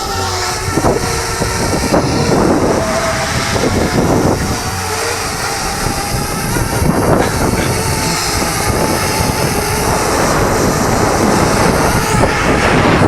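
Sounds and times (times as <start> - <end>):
drone propeller whir: 0.0 - 13.0
wind buffeting microphone: 0.0 - 13.0.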